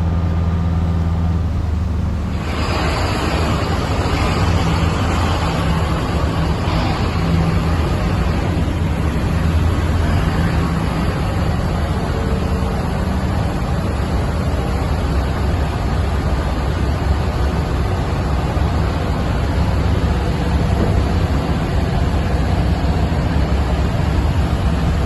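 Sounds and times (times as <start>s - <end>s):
harvest machinery engine drone: 0.0s - 25.0s
mechanical rush: 2.0s - 15.8s.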